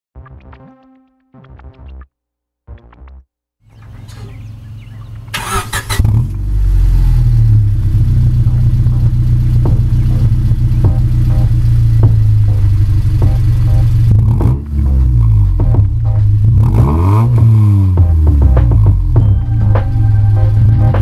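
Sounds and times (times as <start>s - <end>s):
car engine cranking: 3.7s - 17.9s
car engine idling: 3.7s - 21.0s.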